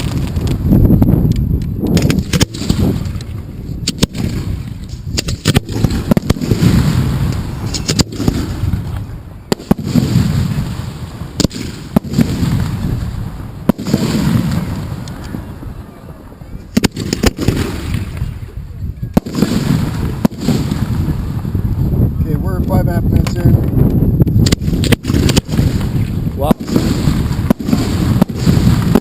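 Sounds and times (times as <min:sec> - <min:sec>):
fireworks exploding: 0:00.0 - 0:29.0.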